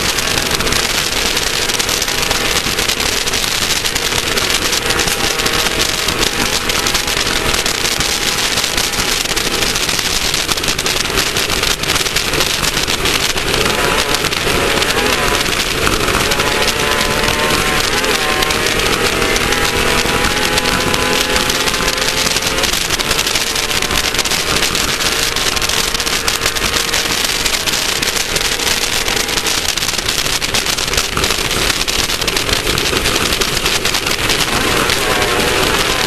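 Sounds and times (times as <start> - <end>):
loud rushing noise: 0.0 - 36.0
race car engine running: 0.0 - 36.0.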